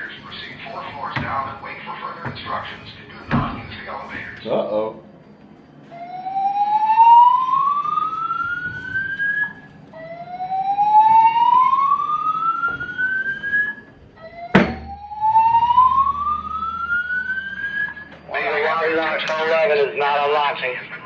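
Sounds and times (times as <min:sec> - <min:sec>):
fire alarm whoop tone: 0:05.9 - 0:20.1.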